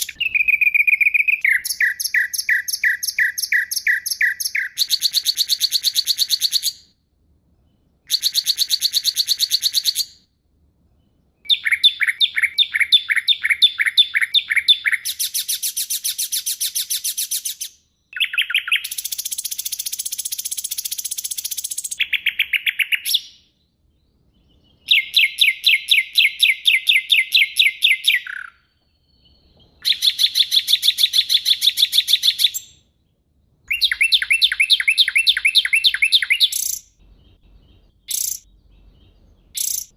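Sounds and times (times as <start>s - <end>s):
harsh buzzy bird chatter: 33.7s - 38.5s, 39.5s - 39.9s.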